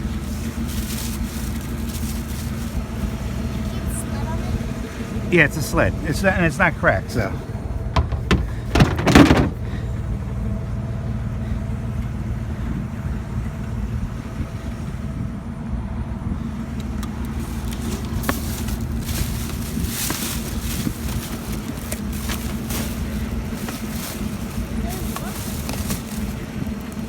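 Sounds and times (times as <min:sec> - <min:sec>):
loud rustling clatter: 0:00.0 - 0:03.8, 0:07.8 - 0:09.8, 0:16.9 - 0:27.0
vehicle engine humming: 0:00.0 - 0:27.0.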